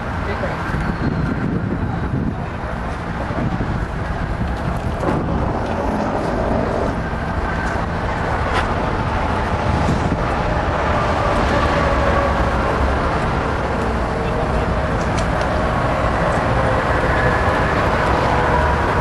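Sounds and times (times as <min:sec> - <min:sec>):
truck engines rumbling: 0:00.0 - 0:19.0.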